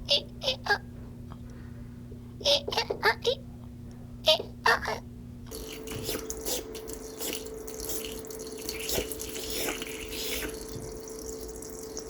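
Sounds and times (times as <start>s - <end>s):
faint steady hum: 0.0s - 12.0s
tap water splashing into sink: 5.5s - 12.0s
water dripping: 5.5s - 12.0s.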